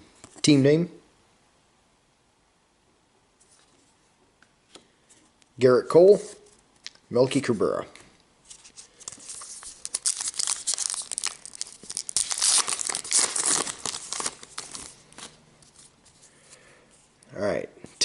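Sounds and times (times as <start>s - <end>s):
foil wrapper tearing and crinkling: 8.9s - 15.4s.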